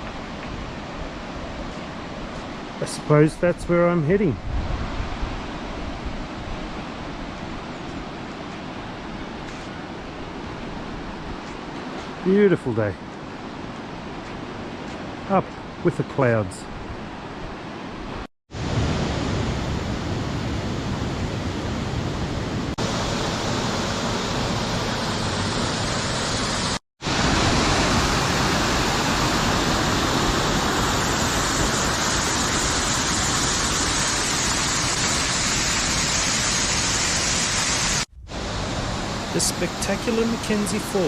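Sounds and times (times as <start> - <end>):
waterfall rushing: 22.8 - 41.0.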